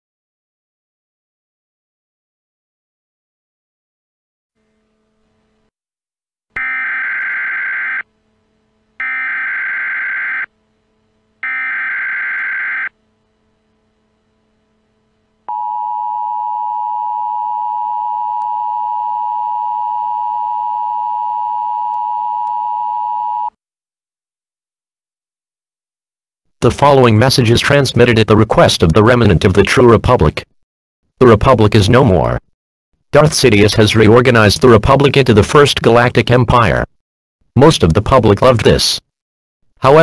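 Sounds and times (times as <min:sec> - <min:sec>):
harsh electronic data bursts: 0:06.6 - 0:08.1, 0:09.0 - 0:10.5, 0:11.4 - 0:13.0.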